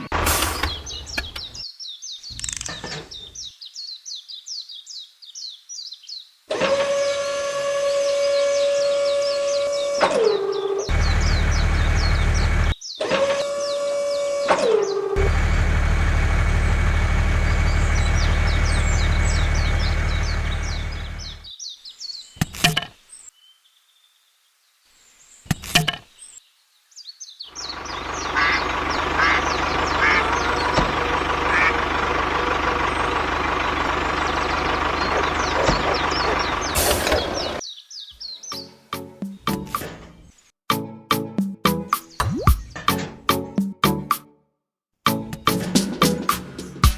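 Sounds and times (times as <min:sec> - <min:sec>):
birds chirping: 0:00.0 - 0:06.4, 0:08.0 - 0:15.3, 0:17.3 - 0:24.5, 0:25.1 - 0:40.5
sharp clicks: 0:02.3 - 0:02.9
low engine drone: 0:10.4 - 0:12.8, 0:14.8 - 0:21.4, 0:27.6 - 0:37.6.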